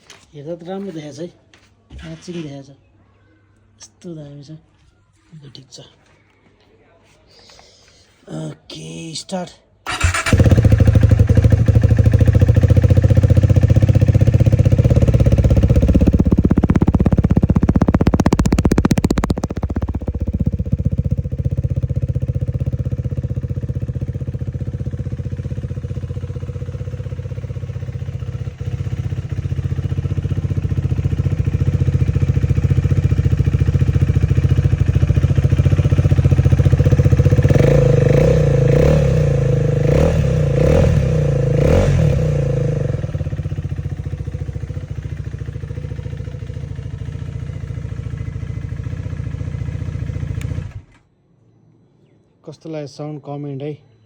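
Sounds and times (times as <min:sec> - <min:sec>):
motorcycle engine idling: 0:09.9 - 0:51.0
motorcycle engine revving: 0:09.9 - 0:51.0.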